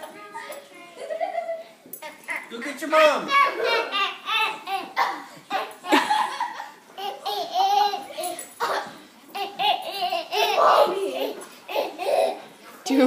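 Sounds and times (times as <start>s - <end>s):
people laughing: 3.4s - 8.2s.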